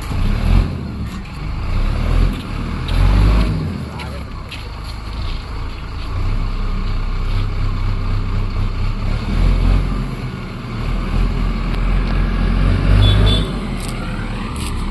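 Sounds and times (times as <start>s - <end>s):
diesel engine running under load: 0.0s - 14.9s.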